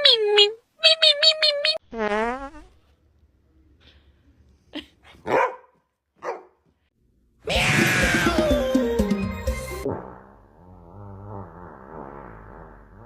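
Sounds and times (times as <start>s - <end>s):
dog barking: 5.2s - 6.6s.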